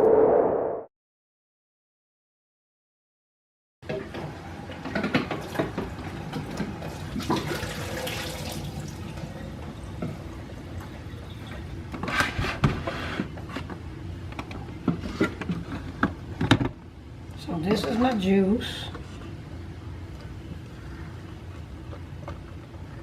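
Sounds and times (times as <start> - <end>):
juice pouring and sloshing: 6.4 - 9.7.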